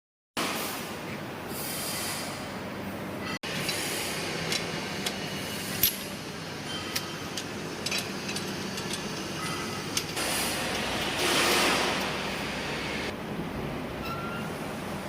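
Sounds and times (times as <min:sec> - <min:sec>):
filling machine hum and hiss: 0:00.4 - 0:02.8, 0:03.4 - 0:13.4
sharp clicks and knocks: 0:06.7 - 0:12.2.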